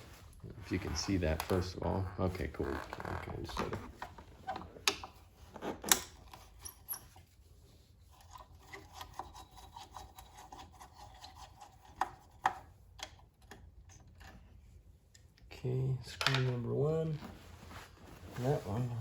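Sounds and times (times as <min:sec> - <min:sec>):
metal scraping on screw: 0:08.1 - 0:12.2.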